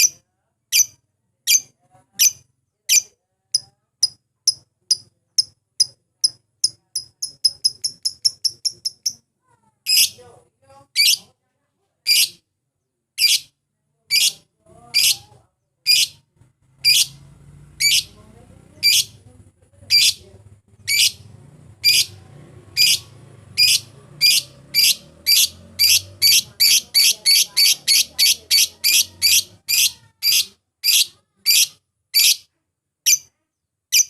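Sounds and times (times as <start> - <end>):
lovebird shrill chirps: 17.8 - 18.2, 19.9 - 20.2, 20.9 - 21.2, 21.8 - 22.1, 22.8 - 32.5.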